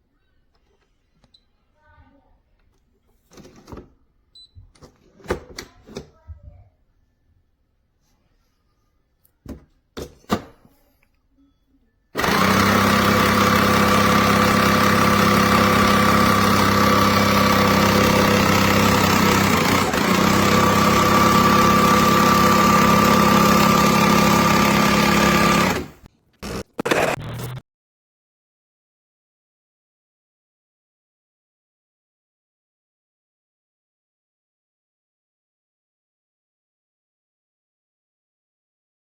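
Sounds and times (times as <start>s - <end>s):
espresso machine motor humming: 12.2s - 26.1s.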